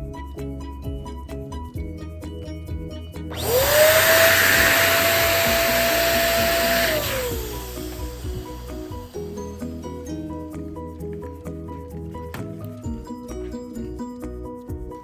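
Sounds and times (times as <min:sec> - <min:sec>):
electric balloon pump whining: 0:03.3 - 0:09.8.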